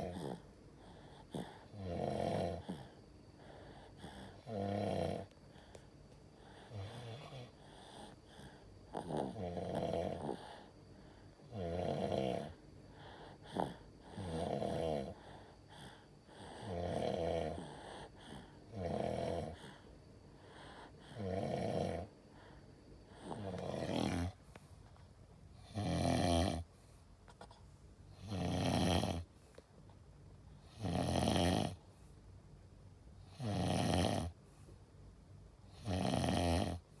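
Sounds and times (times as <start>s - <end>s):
baby snoring: 0.0s - 5.8s, 6.4s - 10.7s, 11.4s - 19.8s, 20.4s - 24.4s, 25.6s - 26.7s, 28.2s - 29.3s, 30.7s - 31.8s, 33.3s - 34.4s, 35.7s - 37.0s.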